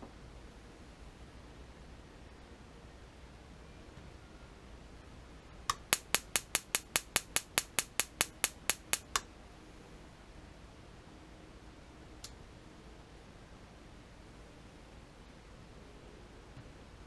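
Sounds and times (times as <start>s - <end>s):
snapping electric sparks: 5.7s - 9.2s.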